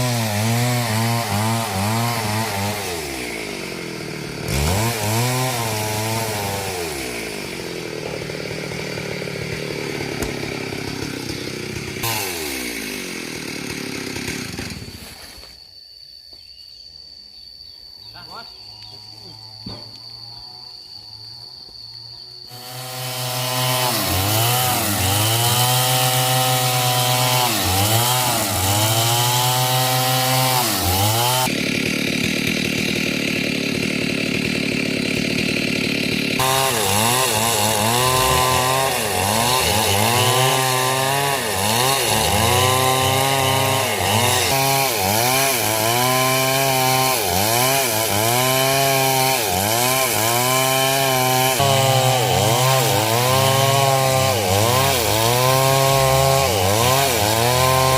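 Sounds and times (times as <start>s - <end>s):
chainsaw cutting timber: 0.0s - 15.6s, 18.9s - 57.9s.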